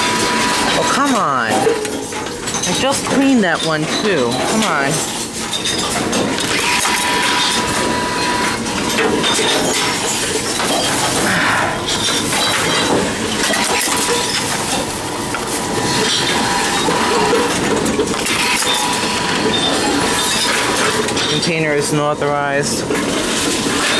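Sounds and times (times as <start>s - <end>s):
bottles and cans clattering: 0.0s - 21.5s
vending machines running: 0.0s - 23.9s.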